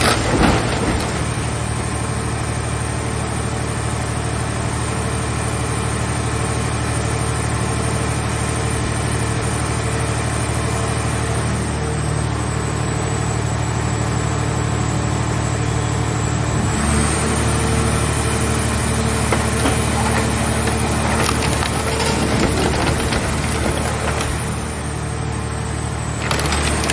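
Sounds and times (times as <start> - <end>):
metal crunching and crackling: 0.0 - 2.4, 18.0 - 26.9
baler engine and hydraulic pump: 7.5 - 26.9.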